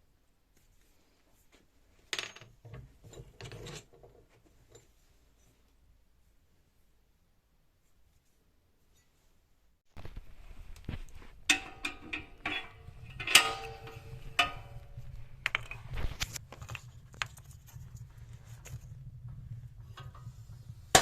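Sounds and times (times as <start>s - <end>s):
low steady hum: 4.4s - 21.0s
metal tools clinking: 11.5s - 16.3s.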